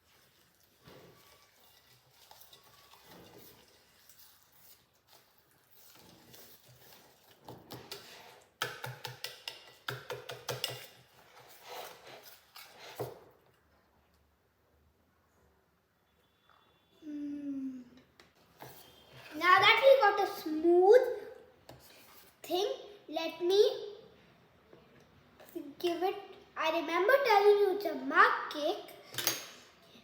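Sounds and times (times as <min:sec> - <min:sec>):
utensil stirring batter in bowl: 0:00.0 - 0:13.7.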